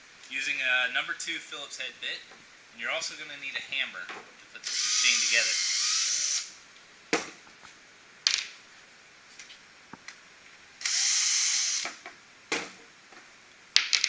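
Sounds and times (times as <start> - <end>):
power driver running: 4.6 - 6.6, 10.8 - 12.0.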